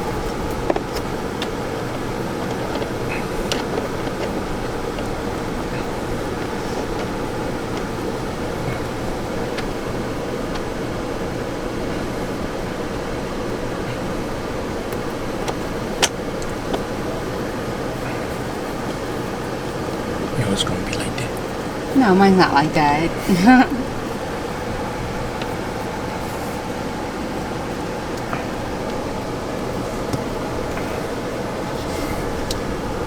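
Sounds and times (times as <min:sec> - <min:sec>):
car cabin hum: 0:00.0 - 0:33.0.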